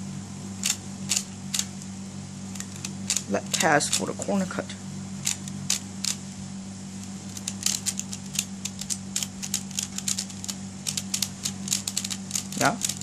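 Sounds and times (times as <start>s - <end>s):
plastic puzzle pieces clicking: 7.3s - 13.0s.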